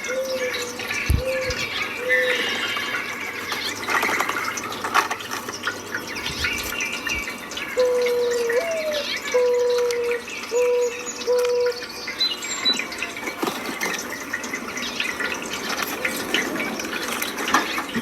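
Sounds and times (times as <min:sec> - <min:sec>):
high bird chirps and ticks: 0:00.0 - 0:13.3
rushing water: 0:00.0 - 0:18.0.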